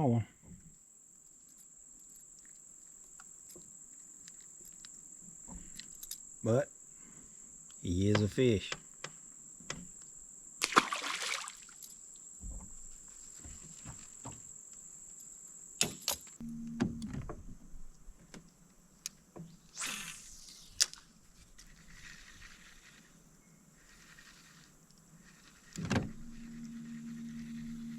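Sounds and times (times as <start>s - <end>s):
high-pitched insect trill: 1.2s - 17.3s, 19.4s - 27.9s
knocks and clicks in boat: 8.1s - 9.9s, 12.4s - 14.5s, 16.8s - 18.4s, 25.8s - 26.2s
water splashes: 10.6s - 11.8s.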